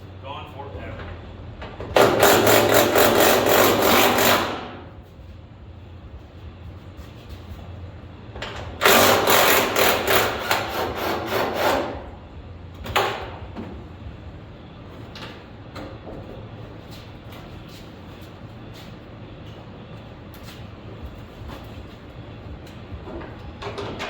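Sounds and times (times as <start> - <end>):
steady low hum: 0.0 - 24.0
power tool rattling: 2.0 - 4.8, 8.8 - 11.7.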